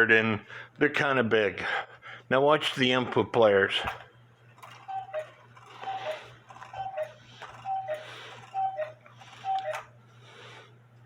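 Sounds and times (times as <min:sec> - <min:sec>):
cuckoo clock calling: 0:04.6 - 0:10.0.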